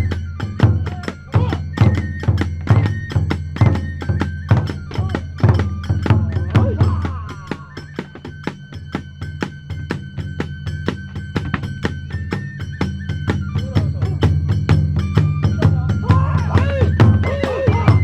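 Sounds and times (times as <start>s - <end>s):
fast drum beats: 0.0s - 18.0s
hand cymbals clashing: 0.0s - 18.0s
flute high note: 13.0s - 14.3s, 15.0s - 18.0s.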